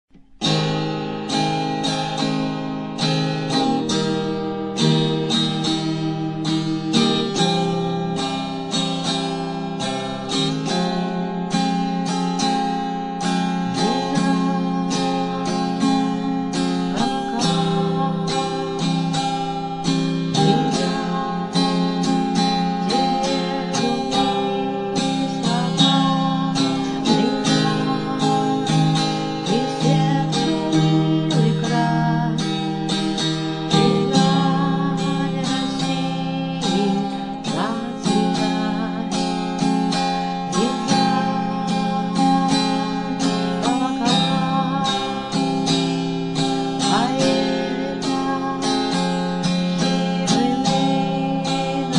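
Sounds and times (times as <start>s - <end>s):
acoustic guitar strumming chords: 0.1s - 51.9s.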